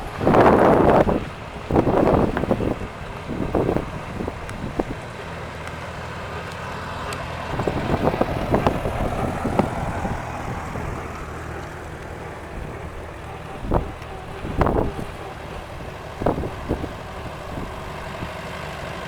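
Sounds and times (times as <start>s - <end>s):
tractor engine running: 0.0s - 19.0s
wind buffeting microphone: 0.0s - 19.0s.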